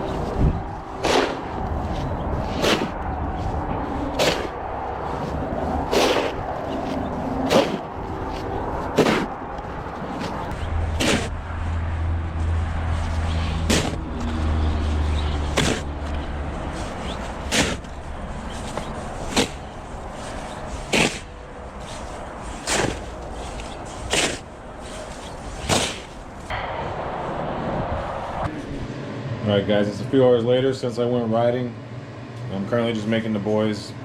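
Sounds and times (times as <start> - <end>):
sharp snap-like hits: 4.2 - 4.5, 25.6 - 26.6.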